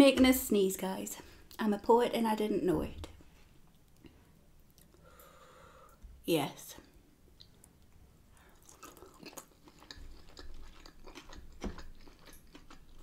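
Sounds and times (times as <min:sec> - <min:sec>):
chewing with wet mouth clicks: 0:08.6 - 0:13.0.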